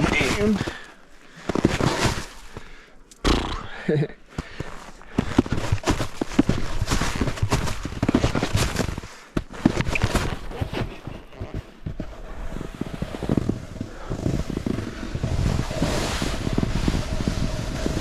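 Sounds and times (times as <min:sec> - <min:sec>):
snowboard scraping over snow: 0:00.0 - 0:00.7, 0:09.4 - 0:18.0.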